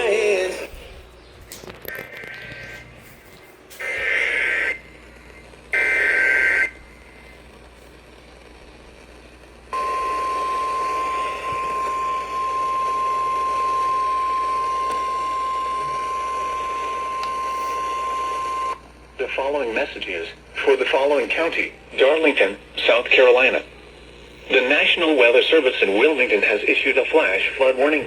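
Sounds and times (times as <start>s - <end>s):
harsh buzzing alert bursts: 5.7s - 6.8s.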